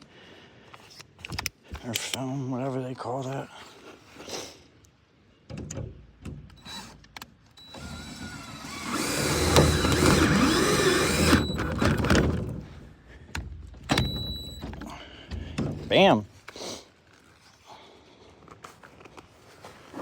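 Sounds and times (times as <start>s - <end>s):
cordless drill driving screw into metal: 6.5s - 12.6s.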